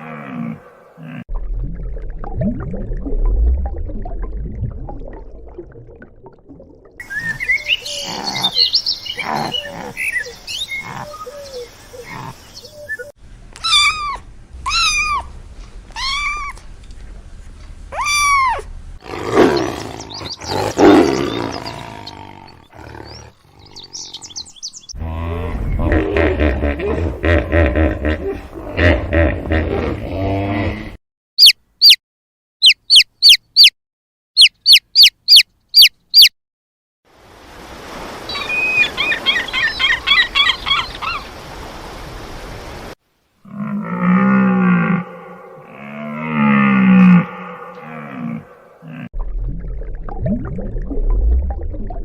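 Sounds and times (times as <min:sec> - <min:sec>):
arched rising and falling calls: 0:07.0 - 0:15.3, 0:31.4 - 0:32.0, 0:32.6 - 0:33.7, 0:34.4 - 0:36.3
low rough roar-like animal call: 0:19.0 - 0:24.4, 0:25.0 - 0:31.0, 0:43.4 - 0:49.1
short gliding calls and chirps: 0:31.4 - 0:32.0, 0:32.6 - 0:33.7, 0:34.4 - 0:36.3
loud rough animal call: 0:43.4 - 0:49.1.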